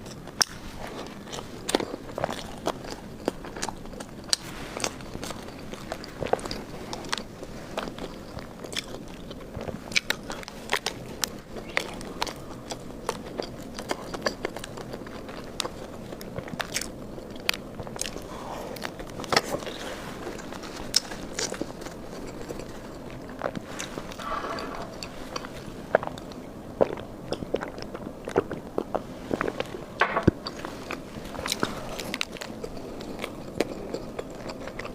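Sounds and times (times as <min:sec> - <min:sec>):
person biting and chewing food: 0:16.4 - 0:29.7.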